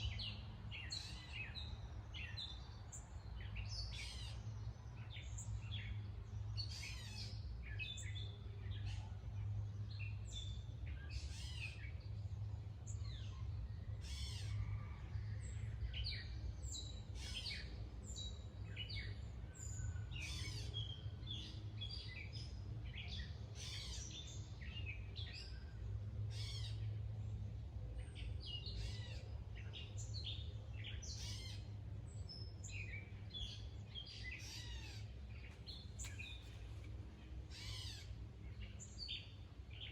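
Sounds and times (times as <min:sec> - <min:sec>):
birds chirping and singing: 0:26.3 - 0:27.0, 0:28.0 - 0:39.9.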